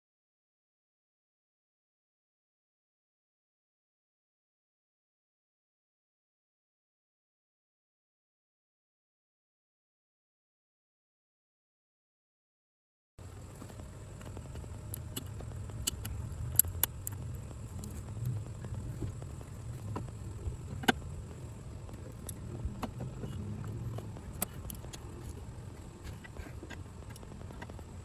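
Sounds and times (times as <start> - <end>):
steady low rumble: 13.2 - 28.0.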